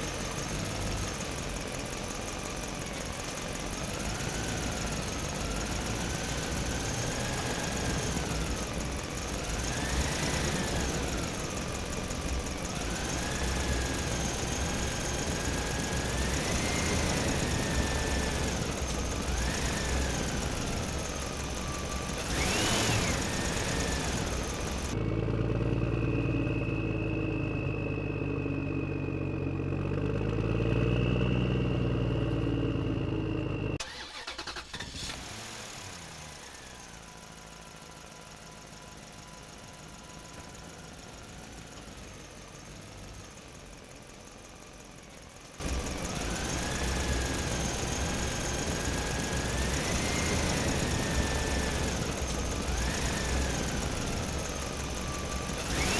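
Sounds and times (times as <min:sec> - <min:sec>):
small electric motors whining: 0:04.5 - 0:25.0, 0:45.6 - 0:55.9.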